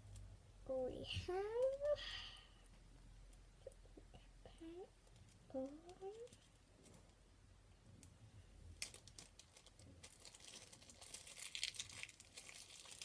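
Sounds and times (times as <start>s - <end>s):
plastic bag crinkling: 8.6s - 13.0s.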